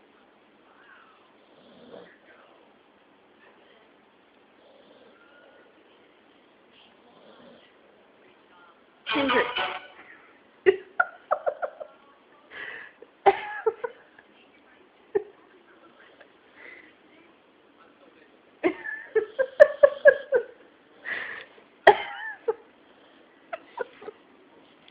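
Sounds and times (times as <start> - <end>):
snoring breaths: 4.6 - 5.8.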